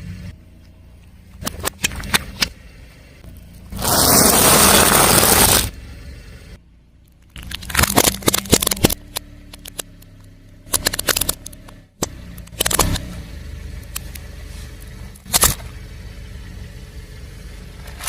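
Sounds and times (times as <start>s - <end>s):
faint low engine hum: 0.0s - 18.0s
car tyre crushing crunchy objects: 3.3s - 6.1s, 7.0s - 13.3s, 14.8s - 15.8s
loud rushing noise: 3.8s - 5.8s.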